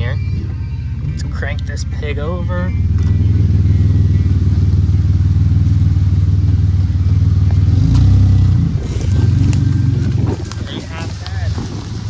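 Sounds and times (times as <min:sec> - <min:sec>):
pickup truck engine running and revving: 0:00.0 - 0:12.0.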